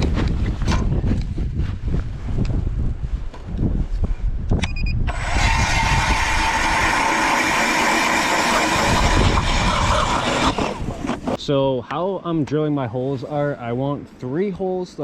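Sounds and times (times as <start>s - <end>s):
wind rumbling on microphone: 0.0s - 11.4s
power ice auger drilling: 5.1s - 11.4s.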